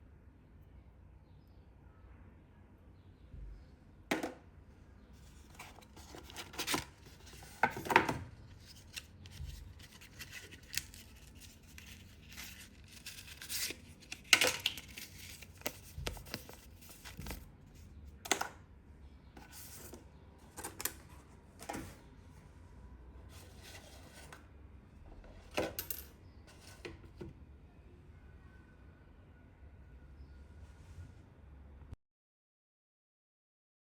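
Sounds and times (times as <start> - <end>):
packaging rustling: 5.2 - 17.5.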